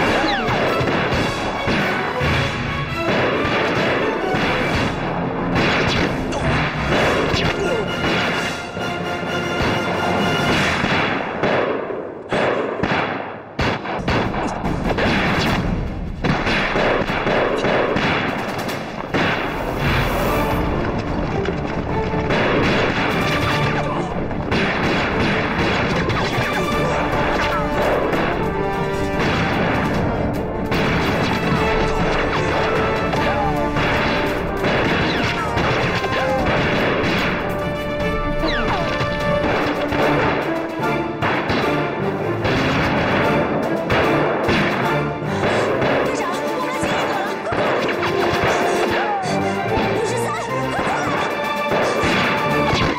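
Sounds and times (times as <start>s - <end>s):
gunfire: 0.0s - 8.8s, 9.5s - 20.2s, 22.1s - 52.9s
dramatic background music: 0.0s - 52.9s
explosions: 9.6s - 21.4s, 22.1s - 40.5s.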